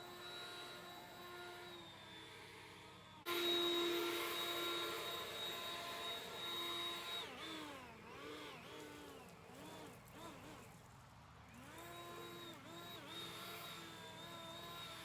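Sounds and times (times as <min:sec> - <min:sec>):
electric leaf blower whining: 0:00.0 - 0:10.8, 0:11.5 - 0:15.0.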